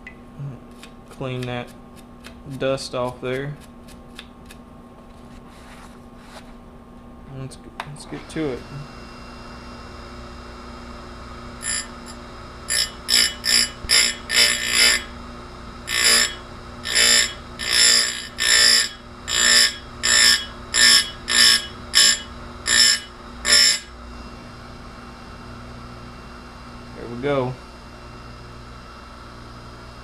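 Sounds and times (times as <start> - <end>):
grinder motor humming: 7.9 - 30.0
shrill grinding on chain teeth: 11.6 - 15.1, 15.9 - 23.9.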